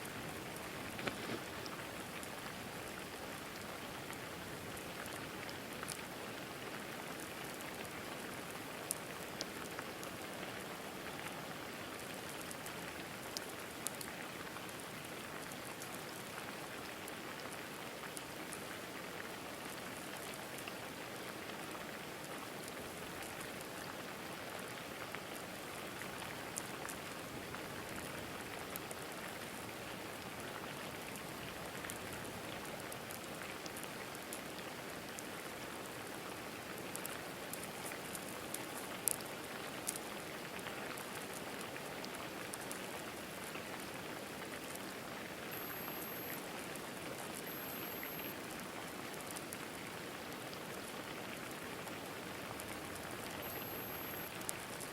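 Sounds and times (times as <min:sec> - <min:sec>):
rain falling: 0:00.0 - 0:54.9
raindrops ticking: 0:36.7 - 0:43.5, 0:45.5 - 0:49.8, 0:50.6 - 0:54.9.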